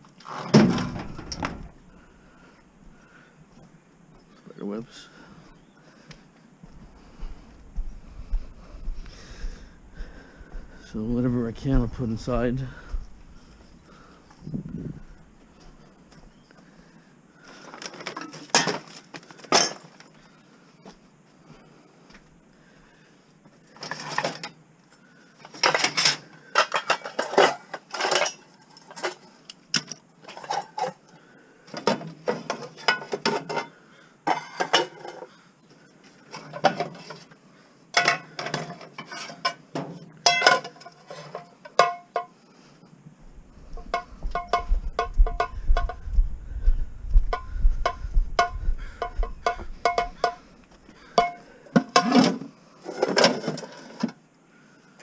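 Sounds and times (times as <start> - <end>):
low rumble: 43.2 - 50.2.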